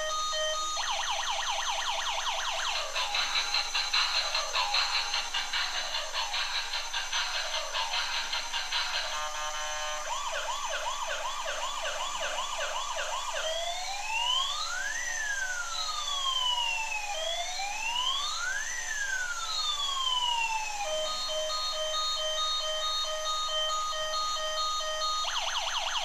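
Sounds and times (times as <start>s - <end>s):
electronic siren yelp and wail: 0.0s - 26.0s.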